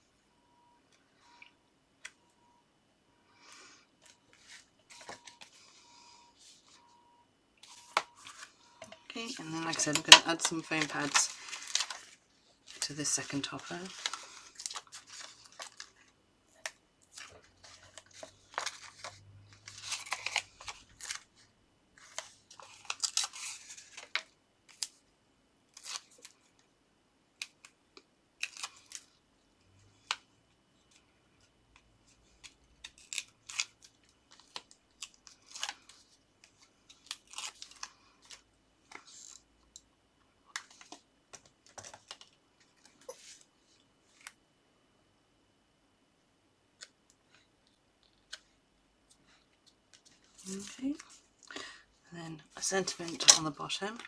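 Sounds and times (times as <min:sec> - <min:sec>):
paper rustling and sliding: 0:09.3 - 0:16.0.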